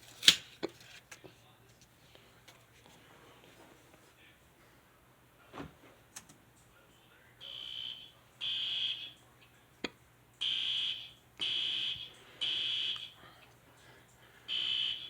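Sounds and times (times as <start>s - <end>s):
fire alarm beeping: 7.4s - 9.2s, 10.4s - 13.2s, 14.5s - 15.0s.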